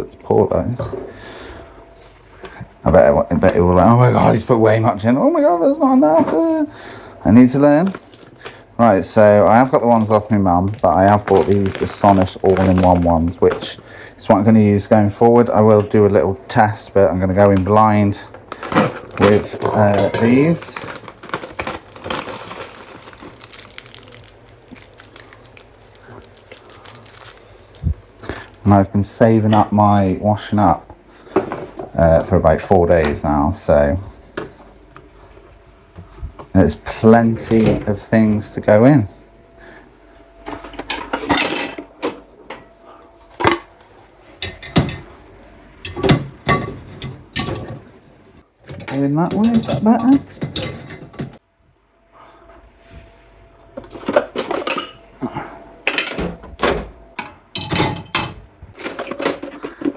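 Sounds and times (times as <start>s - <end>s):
plastic packaging crinkling: 9.5s - 13.8s, 18.1s - 28.7s
dishes clinking in dishwasher racks: 40.5s - 42.8s, 44.4s - 45.1s, 45.8s - 47.9s, 48.7s - 51.4s, 53.8s - 55.1s, 55.8s - 59.9s.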